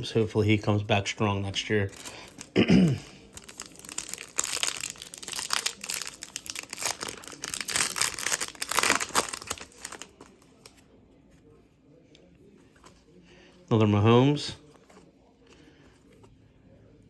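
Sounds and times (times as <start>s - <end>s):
plastic wrapper crinkling: 1.8s - 2.6s, 3.2s - 10.7s.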